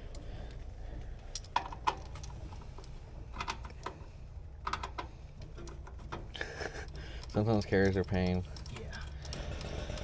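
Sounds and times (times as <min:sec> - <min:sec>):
low steady hum: 0:00.0 - 0:10.0
light metallic clicks and taps: 0:04.6 - 0:09.4.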